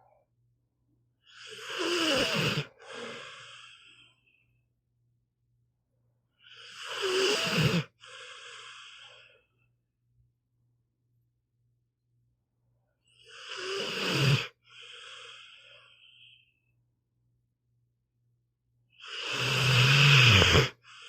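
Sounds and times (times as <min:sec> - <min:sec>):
dog snoring: 0:01.3 - 0:04.0, 0:06.4 - 0:09.3, 0:13.2 - 0:16.3, 0:19.0 - 0:21.0.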